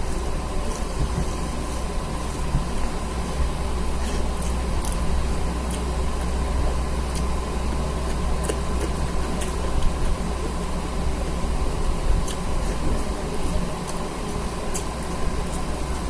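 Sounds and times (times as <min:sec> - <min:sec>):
low mechanical hum: 0:00.0 - 0:16.0
person eating: 0:03.1 - 0:11.5, 0:12.1 - 0:16.0.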